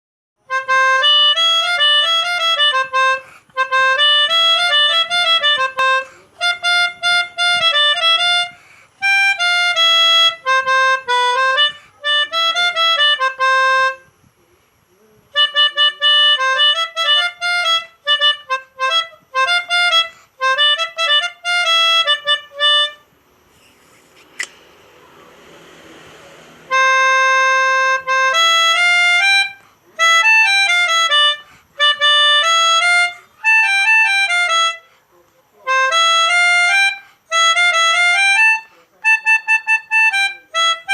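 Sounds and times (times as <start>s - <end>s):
melodica playing quick notes: 0.5s - 14.1s, 15.3s - 34.9s, 35.6s - 40.9s
faint hiss: 1.2s - 20.7s, 21.5s - 37.4s
single click: 24.3s - 24.6s.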